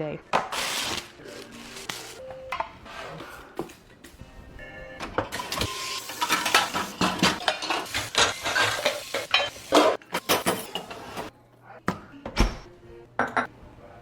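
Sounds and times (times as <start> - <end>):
dishes and cutlery clattering: 5.2 - 11.3.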